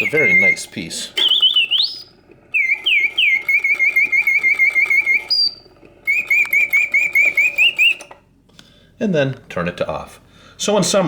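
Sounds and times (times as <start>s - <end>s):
mechanical bird chirps and trills: 0.0s - 8.2s.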